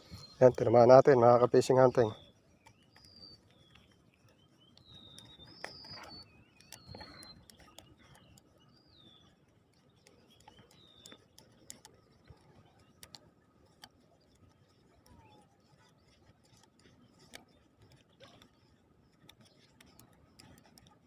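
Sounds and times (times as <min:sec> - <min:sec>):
whistled bird chirps: 0:00.0 - 0:00.4, 0:02.1 - 0:09.3
soft clicks: 0:01.6 - 0:21.0.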